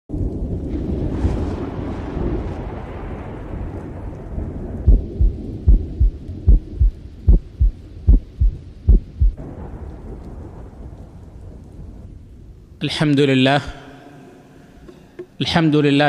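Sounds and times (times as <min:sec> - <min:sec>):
low rumbling rain-like noise: 0:00.1 - 0:14.9
heartbeat thumps: 0:04.9 - 0:09.4.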